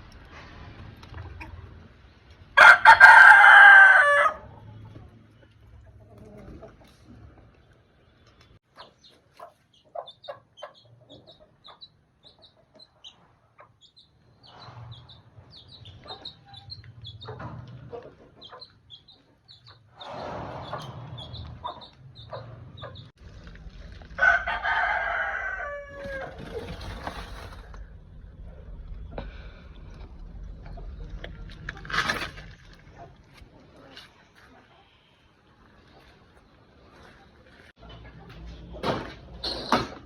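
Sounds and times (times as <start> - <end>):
chickens clucking: 0.1 - 24.0, 32.8 - 39.7
rooster crowing: 2.6 - 4.5, 24.2 - 26.4
chicks peeping: 8.6 - 23.1.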